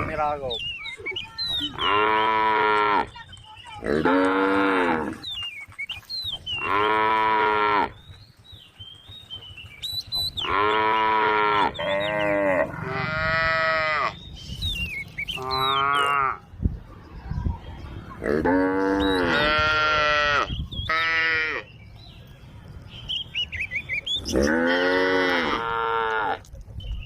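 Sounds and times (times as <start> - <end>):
cattle mooing: 3.8 - 5.2, 6.6 - 7.9, 10.4 - 14.2, 15.4 - 16.4, 18.2 - 21.6, 24.3 - 26.5
high chirping: 14.1 - 16.3.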